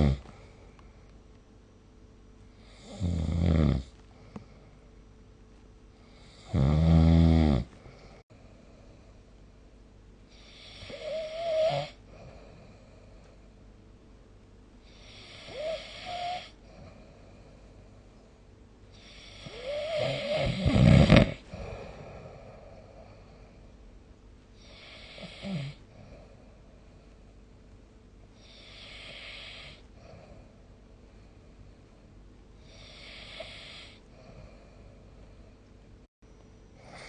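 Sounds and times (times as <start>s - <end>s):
person snoring: 0.0s - 0.4s, 6.2s - 8.2s, 10.4s - 12.9s, 19.0s - 23.3s, 24.6s - 26.2s, 32.7s - 34.8s
soft breathing: 3.9s - 5.1s, 12.0s - 13.7s, 21.4s - 23.8s, 28.3s - 36.0s.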